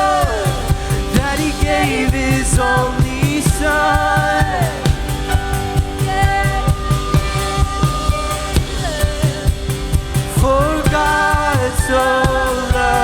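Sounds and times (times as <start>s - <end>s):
drum kit steady beat: 0.0s - 13.0s
held band chords: 0.0s - 13.0s
person singing: 0.0s - 13.0s.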